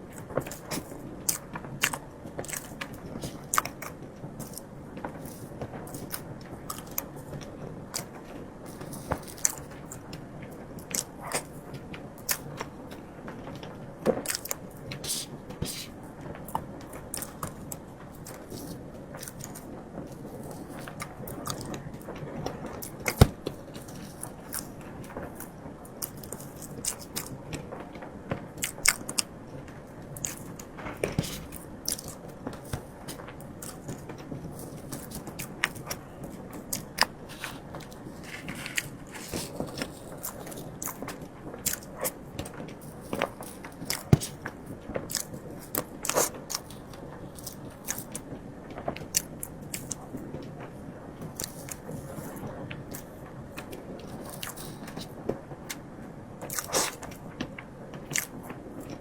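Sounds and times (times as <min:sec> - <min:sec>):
person biting and chewing cake: 0:00.0 - 0:07.3, 0:07.9 - 0:10.1, 0:10.8 - 0:11.6, 0:12.2 - 0:12.8, 0:14.1 - 0:16.0, 0:16.6 - 0:27.4, 0:28.6 - 0:29.3, 0:30.1 - 0:48.2, 0:49.0 - 0:50.1, 0:51.4 - 0:55.8, 0:56.4 - 0:57.2, 0:58.1 - 0:59.0
mouth clicks and smacks: 0:14.2 - 0:15.9, 0:36.7 - 0:42.2, 0:45.1 - 0:48.2, 0:56.4 - 0:57.1, 0:58.1 - 0:58.4.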